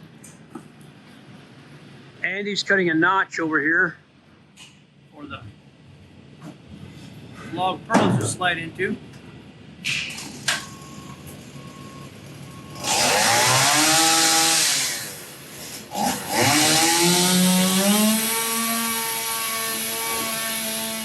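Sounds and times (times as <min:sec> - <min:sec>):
chainsaw cutting log: 0:12.8 - 0:21.0.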